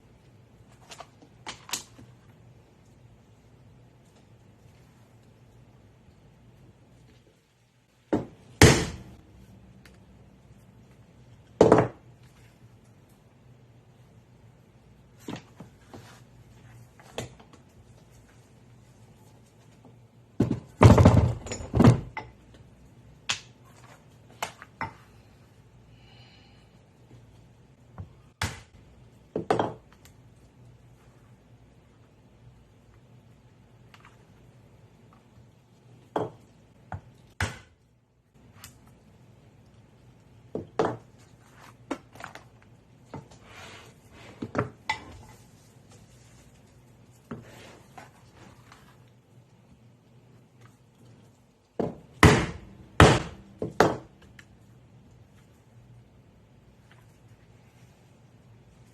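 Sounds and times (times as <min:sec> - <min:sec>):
mallet striking leather punch: 0:08.6 - 0:09.1, 0:52.2 - 0:54.0.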